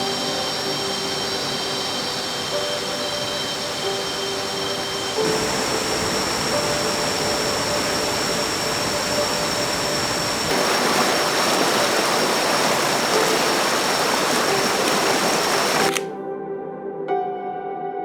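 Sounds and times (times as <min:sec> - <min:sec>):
soft music: 0:00.0 - 0:18.0
water rushing over rocks: 0:08.7 - 0:16.0.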